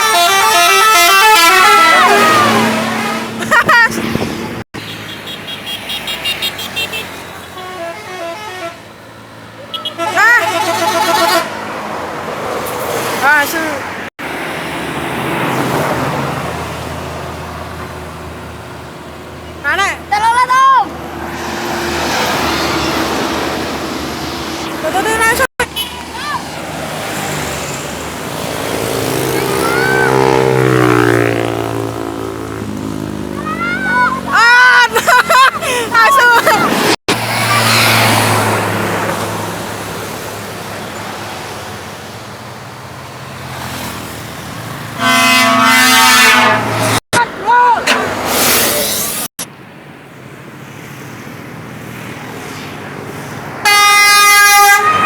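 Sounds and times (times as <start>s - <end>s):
musical multi-tone air horn: 0.0s - 3.4s, 5.2s - 8.9s, 9.7s - 11.6s, 45.0s - 47.0s, 53.6s - 55.0s
vehicle road noise: 0.0s - 55.0s
bus engine droning past: 20.9s - 47.0s.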